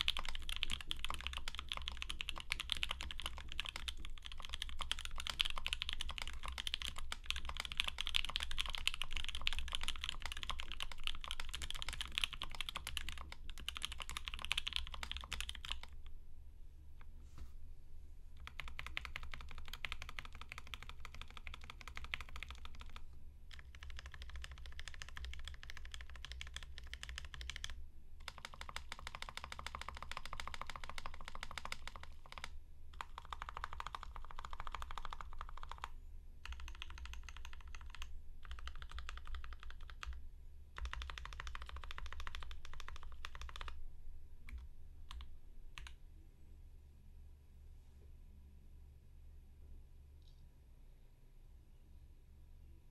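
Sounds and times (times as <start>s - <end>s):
mechanical keyboard typing: 0.0s - 16.0s, 18.4s - 40.2s, 40.8s - 43.8s, 44.5s - 46.0s.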